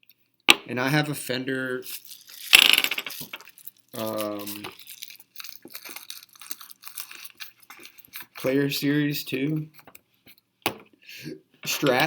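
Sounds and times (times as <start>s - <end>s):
packaging crinkling: 1.9s - 8.6s
small parts clicking and tapping: 2.0s - 8.5s.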